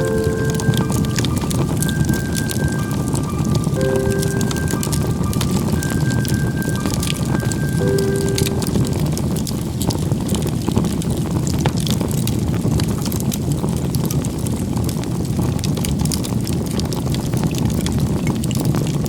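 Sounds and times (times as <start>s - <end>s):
steady low rumble: 0.0s - 9.7s
wood fire crackling and popping: 0.0s - 19.0s.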